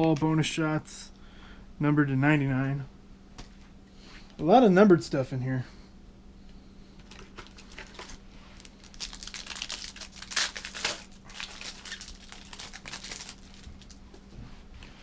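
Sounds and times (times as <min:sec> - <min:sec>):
wrapper tearing and crinkling: 0:07.0 - 0:14.0.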